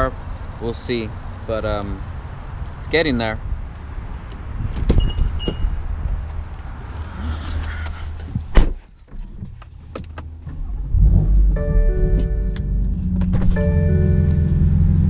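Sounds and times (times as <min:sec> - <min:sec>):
car engine rumble: 0:03.4 - 0:15.0
car door shutting: 0:08.2 - 0:10.8, 0:11.6 - 0:14.7.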